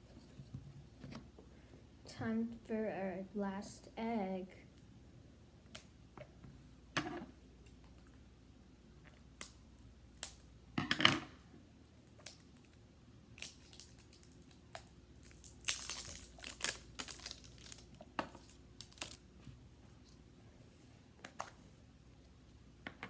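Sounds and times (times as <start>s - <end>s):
crinkling plastic packaging: 12.1s - 19.3s.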